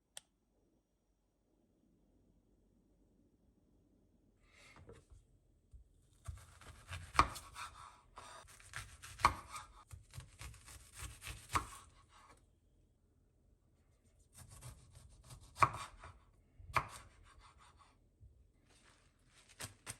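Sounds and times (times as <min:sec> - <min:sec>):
knife cutting food: 0:06.2 - 0:12.2.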